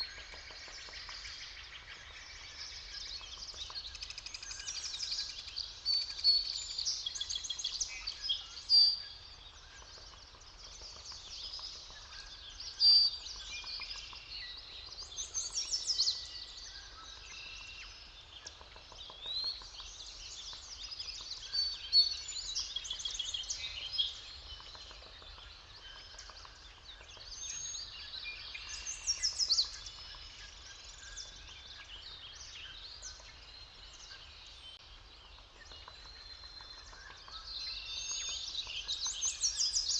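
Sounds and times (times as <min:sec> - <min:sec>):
songbirds singing: 0:00.0 - 0:39.9.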